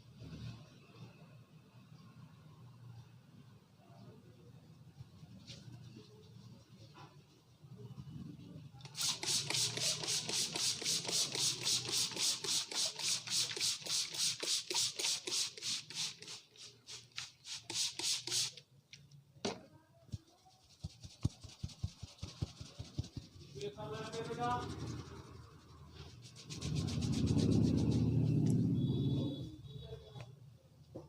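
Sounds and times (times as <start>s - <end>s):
hands rubbing through hair: 20.2s - 28.4s.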